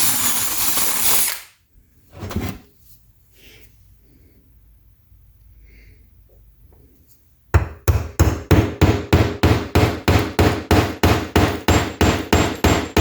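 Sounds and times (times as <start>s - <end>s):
hammer blows with metallic ring: 8.2s - 13.0s.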